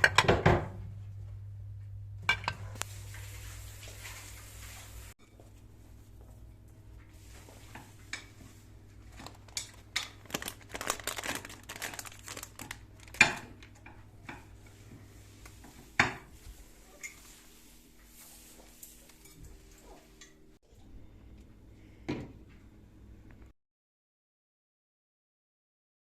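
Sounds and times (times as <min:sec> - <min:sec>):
rustling: 0:08.4 - 0:13.7.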